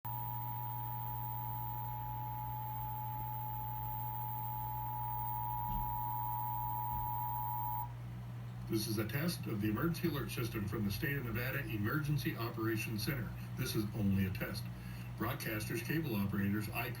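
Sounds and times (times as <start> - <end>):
two-tone alarm: 0.0 - 7.9
low hum: 0.0 - 8.0.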